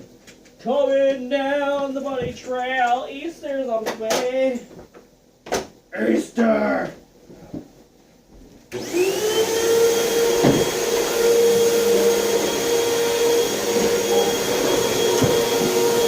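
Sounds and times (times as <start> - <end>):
vacuum cleaner motor whine: 8.7 - 16.0.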